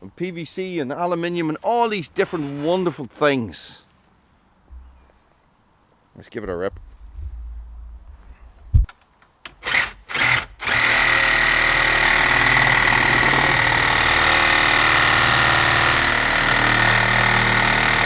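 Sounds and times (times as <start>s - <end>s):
reciprocating saw cutting wood: 9.5s - 18.0s.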